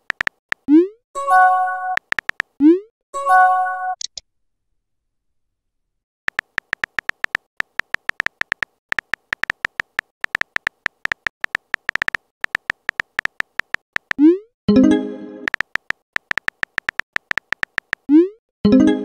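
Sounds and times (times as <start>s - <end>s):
short electronic typing blips: 0.0s - 2.8s, 6.3s - 14.4s, 15.5s - 18.3s.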